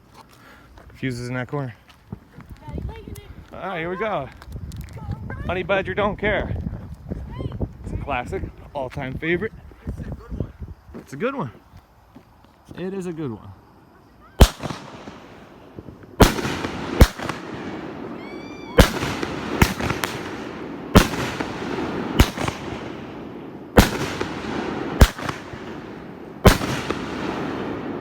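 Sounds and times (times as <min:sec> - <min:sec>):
firework booms echoing: 0:14.4 - 0:28.0.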